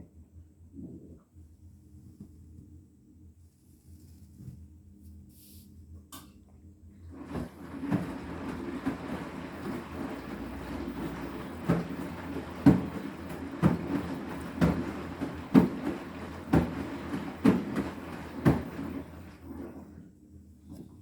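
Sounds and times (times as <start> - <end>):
washing machine drum churning: 7.1 - 20.1
wet pillows thudding against drum: 7.3 - 19.6.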